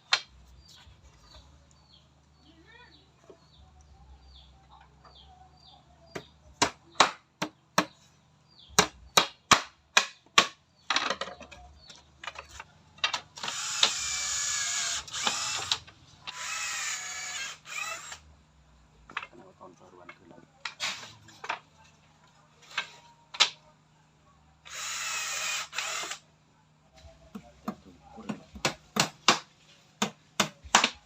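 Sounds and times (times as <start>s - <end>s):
power drill running: 13.4s - 18.2s, 24.7s - 26.2s.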